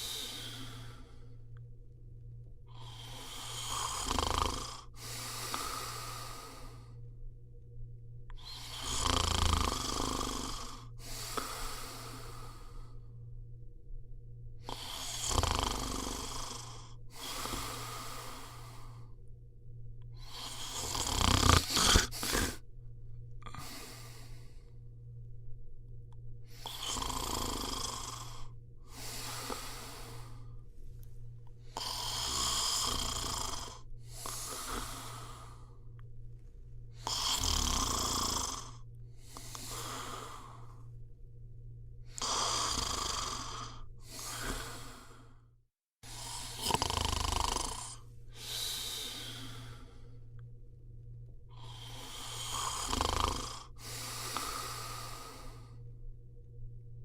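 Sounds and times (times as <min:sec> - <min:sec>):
person snoring: 0:00.0 - 0:01.4, 0:02.7 - 0:07.0, 0:08.3 - 0:13.2, 0:14.6 - 0:19.2, 0:20.1 - 0:22.6, 0:23.4 - 0:24.8, 0:26.5 - 0:30.7, 0:31.6 - 0:36.0, 0:36.9 - 0:41.0, 0:42.0 - 0:50.4, 0:51.5 - 0:55.9.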